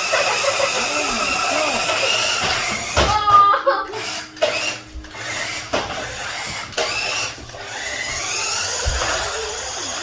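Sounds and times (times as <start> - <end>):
small electric motors whirring: 0.0 - 10.0
toy robot clicks: 4.0 - 8.7.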